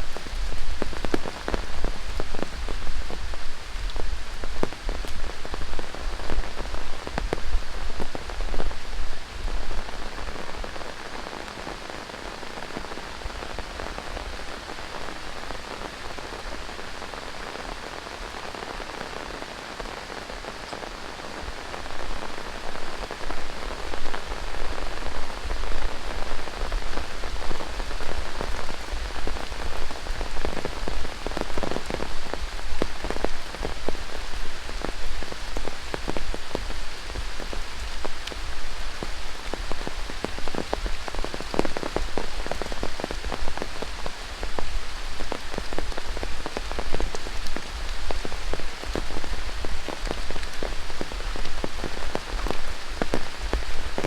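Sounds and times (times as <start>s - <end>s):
steady rain falling: 0.0s - 54.0s
raindrops spattering: 23.2s - 54.0s.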